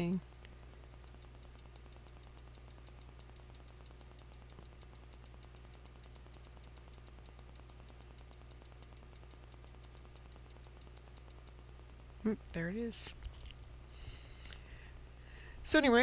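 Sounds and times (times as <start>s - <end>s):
rapid even ticking: 1.0s - 11.7s.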